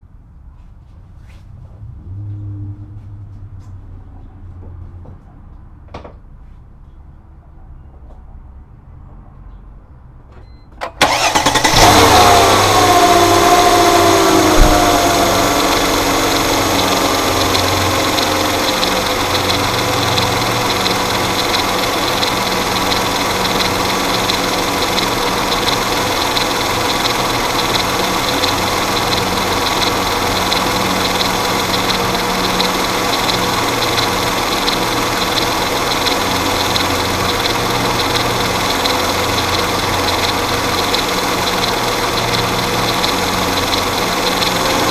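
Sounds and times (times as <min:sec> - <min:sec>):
engine cranked by starter: 0:10.8 - 0:44.9
engine idling: 0:11.0 - 0:44.9
timing chain noise: 0:11.2 - 0:44.9.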